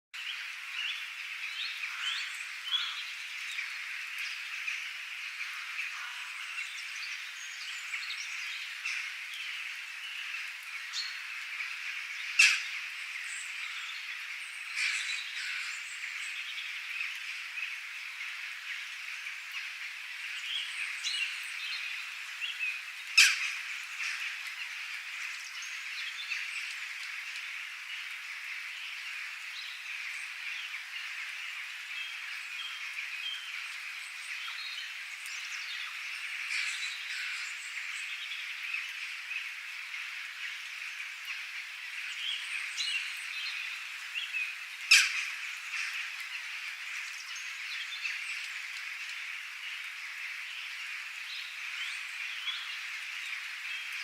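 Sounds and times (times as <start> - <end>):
birds chirping: 0.2 - 54.0
sharp loud bird calls: 23.1 - 24.4, 44.5 - 46.2.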